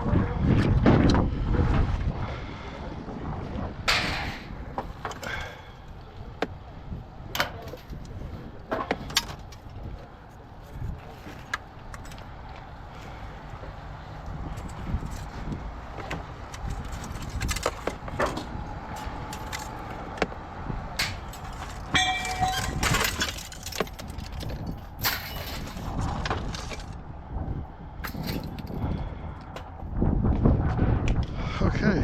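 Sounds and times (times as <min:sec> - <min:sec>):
low engine rumble: 0:00.0 - 0:32.0
metallic knocks and rattles: 0:16.0 - 0:26.9.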